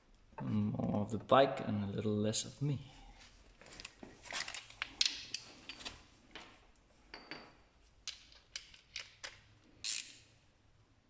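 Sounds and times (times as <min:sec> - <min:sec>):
objects being handled clicking: 0:03.6 - 0:06.5, 0:07.2 - 0:10.2.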